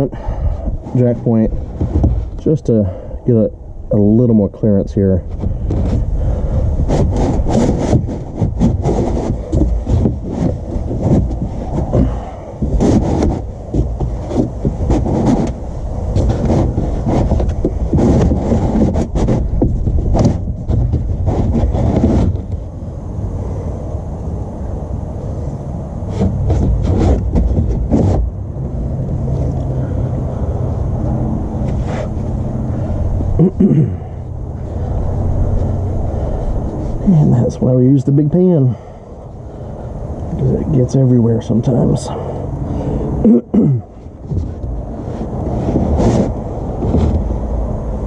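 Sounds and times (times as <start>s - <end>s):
scraping and rubbing: 0.0s - 2.6s, 5.2s - 22.8s, 26.0s - 29.7s, 31.6s - 33.7s, 44.0s - 47.6s
steady low hum: 0.0s - 48.0s
small knocks: 1.7s - 2.5s, 6.9s - 22.6s.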